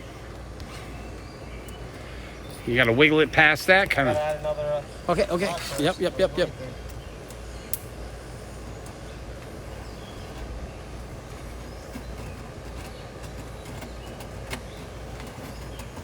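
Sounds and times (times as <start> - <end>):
brush scraping inside vent duct: 0.0 - 16.0
sharp click: 6.9 - 8.0.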